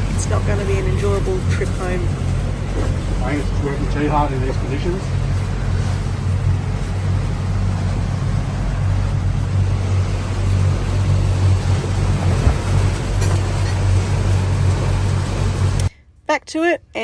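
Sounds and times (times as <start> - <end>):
boat engine droning: 0.0 - 15.9.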